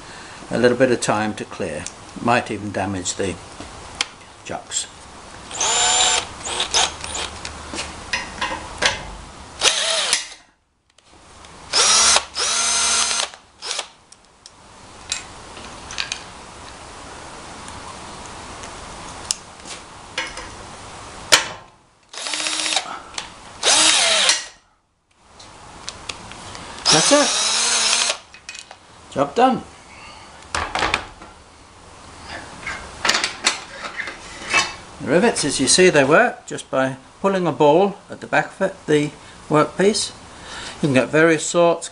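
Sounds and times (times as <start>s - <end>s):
cordless drill whirring: 5.5s - 7.3s, 9.6s - 10.4s, 11.7s - 13.9s, 22.1s - 22.9s, 23.6s - 24.5s, 26.8s - 28.2s.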